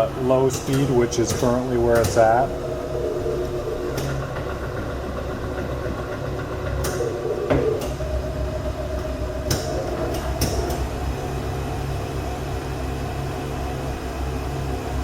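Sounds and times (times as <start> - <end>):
lathe motor and spindle hum: 0.0 - 15.0
sharp clicks and knocks: 0.5 - 2.5, 3.9 - 8.1, 9.0 - 10.8.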